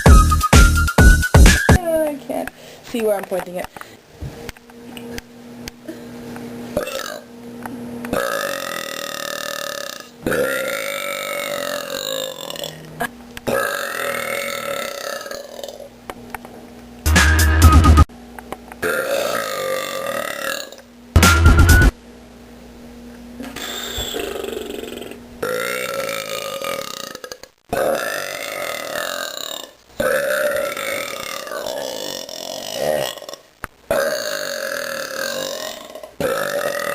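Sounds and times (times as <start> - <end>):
person burping: 6.8 - 7.2, 8.1 - 15.9, 18.8 - 20.8, 23.4 - 36.9.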